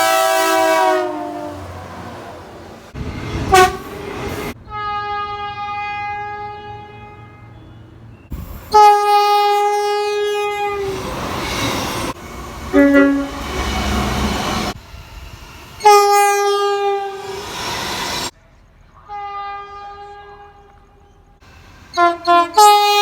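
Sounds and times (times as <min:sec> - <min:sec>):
train horn blasts: 0:00.0 - 0:01.9, 0:03.4 - 0:04.0, 0:04.6 - 0:07.8, 0:08.7 - 0:11.2, 0:12.6 - 0:14.8, 0:15.8 - 0:17.5, 0:19.0 - 0:21.2, 0:21.9 - 0:23.0
passing train noise: 0:00.0 - 0:23.0.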